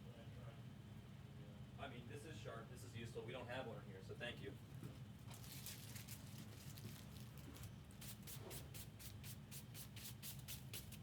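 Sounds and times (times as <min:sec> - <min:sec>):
hand brush sweeping a table: 0:08.1 - 0:10.9.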